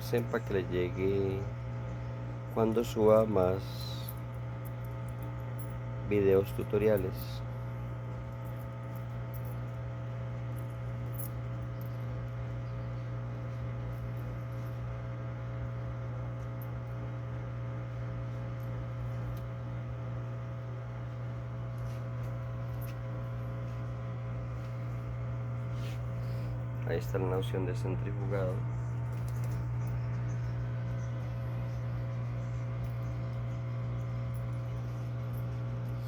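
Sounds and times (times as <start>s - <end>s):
washing machine humming: 0.0s - 36.0s.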